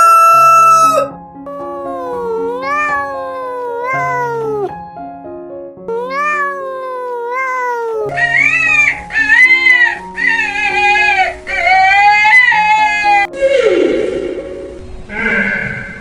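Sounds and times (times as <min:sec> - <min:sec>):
cat crying high-pitched: 0:00.0 - 0:04.7, 0:05.9 - 0:13.3
cat meowing: 0:00.0 - 0:04.7, 0:05.9 - 0:13.3
background music: 0:00.0 - 0:15.9.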